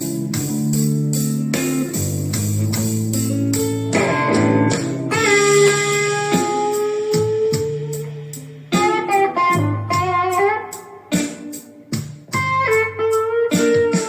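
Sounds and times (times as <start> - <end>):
blues guitar backing track: 0.0 - 14.0.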